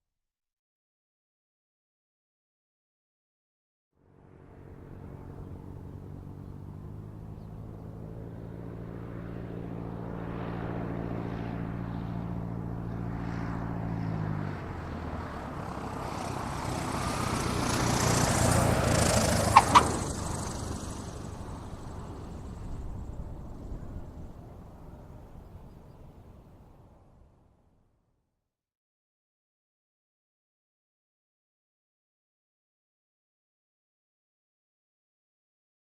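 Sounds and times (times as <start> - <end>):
aircraft passing rushing noise: 4.0 - 27.3
propeller airplane engine: 4.0 - 27.4.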